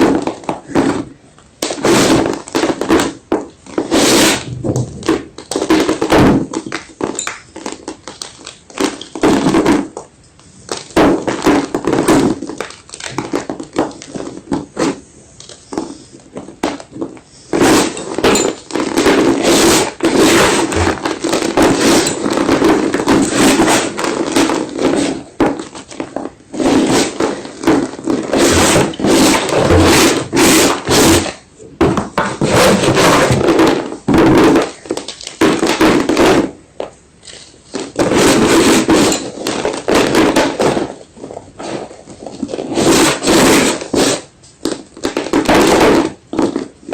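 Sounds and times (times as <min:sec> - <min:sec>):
chalk being crunched: 0:26.6 - 0:31.4.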